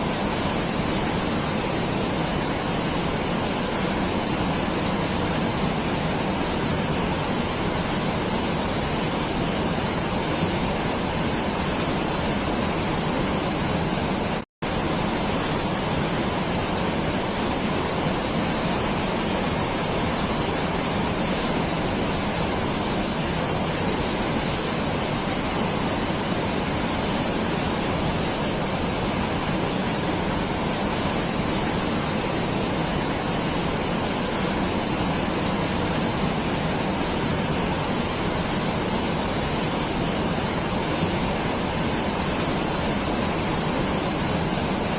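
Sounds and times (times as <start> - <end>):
steady rushing noise: 0.0 - 44.9.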